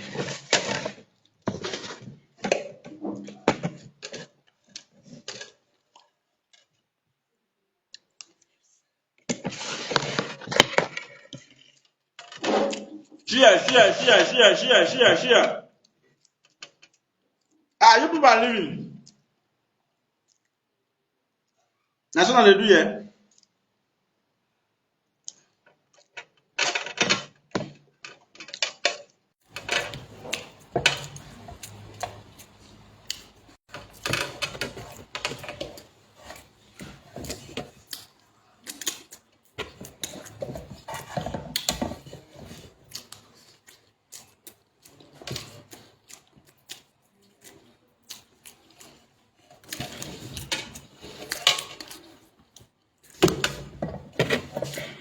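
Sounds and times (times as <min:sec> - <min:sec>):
spoon and dishes clattering: 0:29.5 - 0:37.8.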